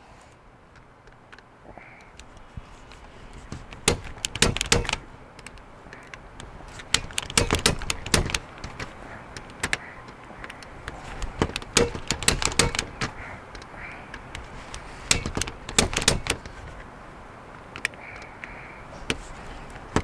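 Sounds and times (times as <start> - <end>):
punchdown tool clicking: 2.2 - 17.0, 19.0 - 20.0.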